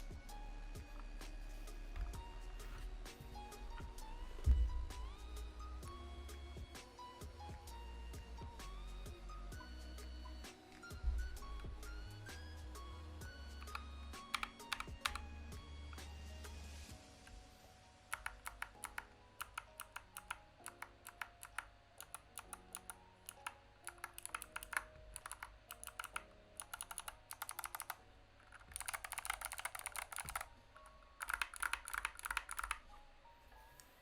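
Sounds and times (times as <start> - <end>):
mechanical keyboard clicking: 13.6 - 15.2, 18.1 - 32.9.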